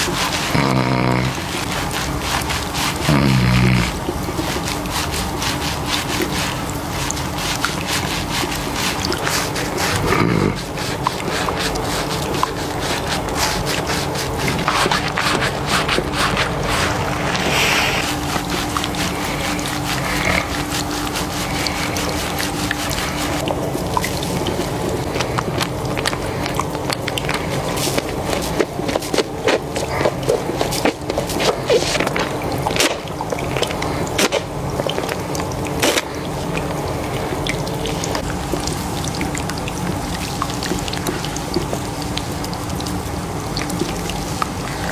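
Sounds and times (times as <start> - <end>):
hands rubbing wet scalp: 0.0 - 38.3
water dripping: 0.0 - 44.9
water splashing into basin: 0.0 - 44.9
man snoring: 0.5 - 1.6, 3.1 - 4.0, 10.1 - 10.6.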